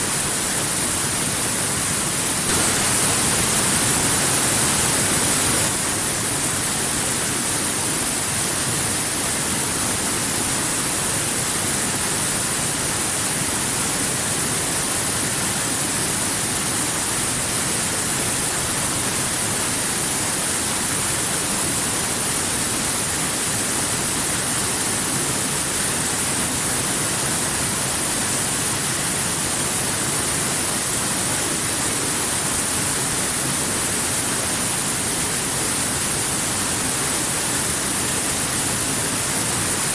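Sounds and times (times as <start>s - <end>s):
waterfall rushing: 2.0s - 6.6s.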